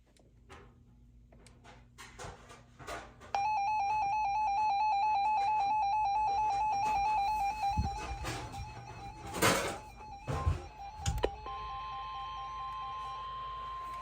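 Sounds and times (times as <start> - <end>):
warbling electronic alert tone: 3.4 - 13.8.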